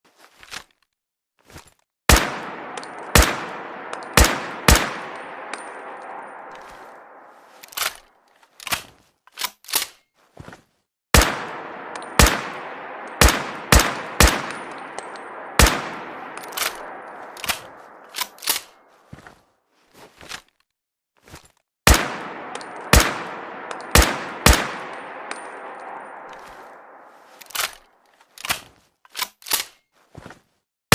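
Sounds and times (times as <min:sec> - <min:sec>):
rifle shots echoing: 0:02.1 - 0:08.0, 0:11.2 - 0:18.8, 0:21.9 - 0:27.8.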